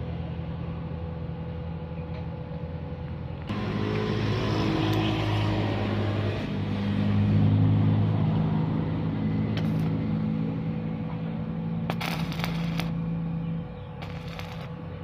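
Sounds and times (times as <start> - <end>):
metallic clatter and scraping: 9.6 - 10.0, 11.8 - 13.0, 14.0 - 14.9.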